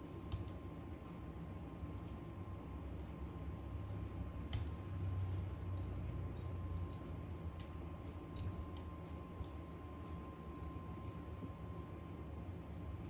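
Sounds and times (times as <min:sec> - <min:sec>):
low steady hum: 0:00.0 - 0:13.0
small tools clicking and tapping: 0:00.3 - 0:00.6, 0:04.5 - 0:07.0.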